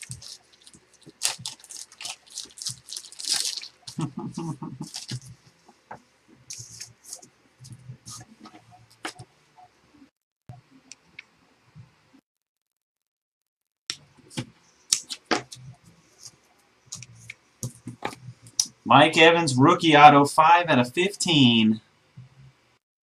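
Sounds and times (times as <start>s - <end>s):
trading cards being handled: 0.0s - 9.3s, 14.2s - 18.8s.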